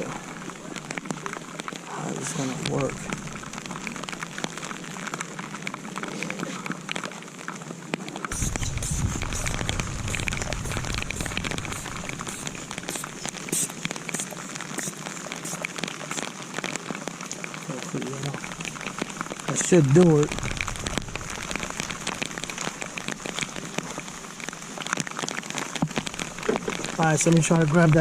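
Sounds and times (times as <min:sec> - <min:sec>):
steady rain: 0:00.0 - 0:28.0
low rumble: 0:02.8 - 0:04.3, 0:08.3 - 0:13.5, 0:18.4 - 0:24.8.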